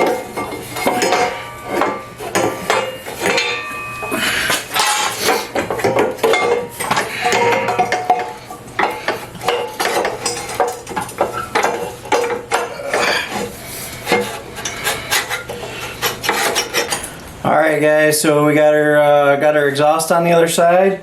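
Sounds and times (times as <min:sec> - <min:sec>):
metal pipe clanking on frame: 0:00.0 - 0:17.2
metal rubbing scrapes: 0:13.0 - 0:17.2.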